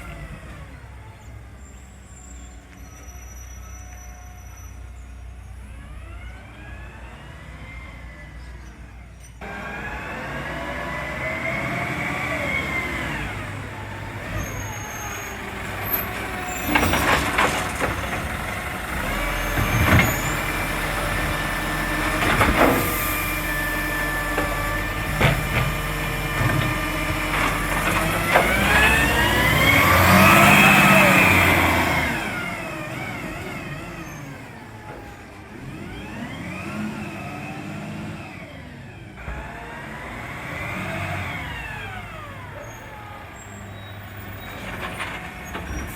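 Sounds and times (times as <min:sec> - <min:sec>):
truck engine revving: 0:09.4 - 0:45.9.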